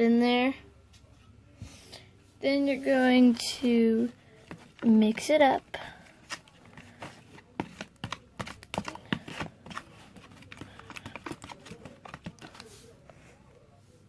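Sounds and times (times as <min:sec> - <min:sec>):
stirrer scraping a bowl: 0:04.4 - 0:12.8.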